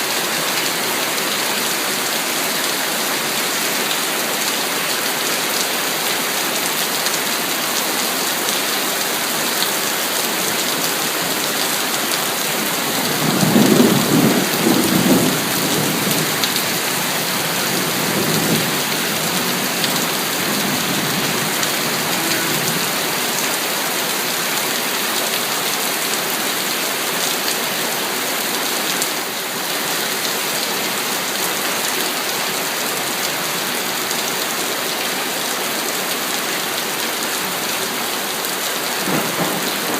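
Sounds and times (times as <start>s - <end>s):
heavy rain falling: 0.0s - 39.9s
thunder rumbling: 12.7s - 23.4s, 39.0s - 39.9s.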